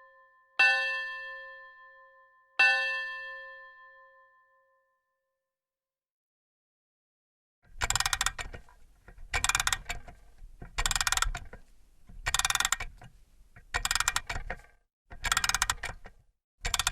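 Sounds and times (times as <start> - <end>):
clock mechanism ratchet ticking: 7.7 - 16.9.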